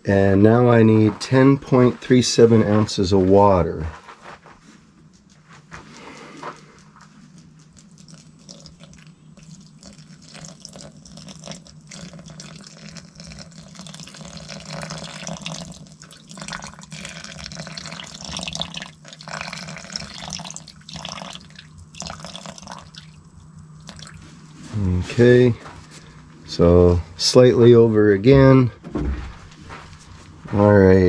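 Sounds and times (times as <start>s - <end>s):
water pouring into container: 7.6s - 24.2s.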